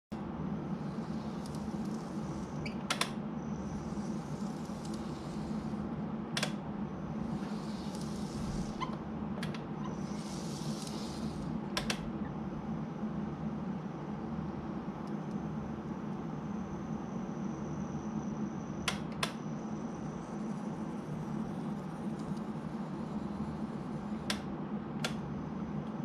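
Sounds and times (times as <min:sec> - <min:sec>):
model tram motor hum: 0:00.1 - 0:12.8.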